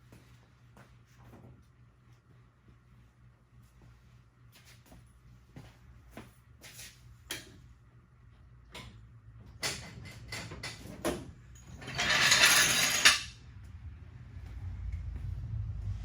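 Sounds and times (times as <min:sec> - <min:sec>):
metal tools clanking on car parts: 0:09.7 - 0:13.4.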